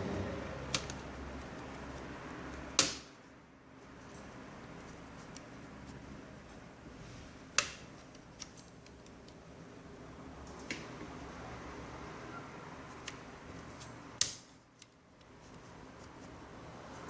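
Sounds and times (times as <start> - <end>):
laptop parts clicking: 0.6 - 3.1, 7.5 - 9.5, 13.0 - 15.6.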